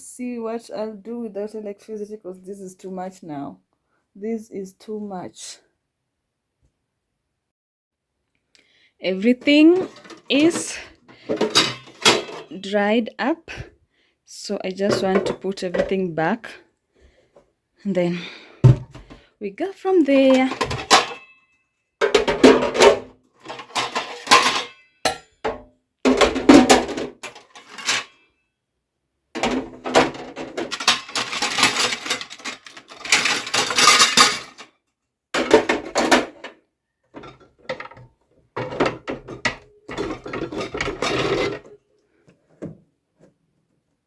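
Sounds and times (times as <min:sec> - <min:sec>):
fridge shelves clattering and scraping: 0:09.4 - 0:12.5, 0:14.8 - 0:16.0, 0:20.1 - 0:21.3, 0:22.0 - 0:24.8, 0:25.5 - 0:28.2, 0:29.4 - 0:34.7, 0:35.4 - 0:36.6, 0:37.2 - 0:41.8.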